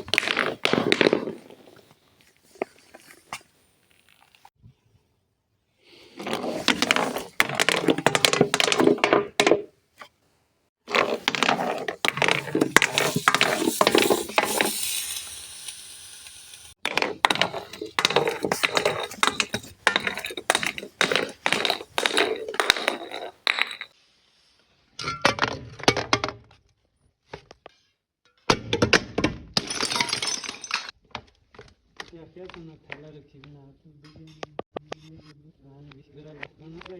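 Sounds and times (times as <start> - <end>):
glass being crushed: 11.1 - 23.9, 29.6 - 30.9.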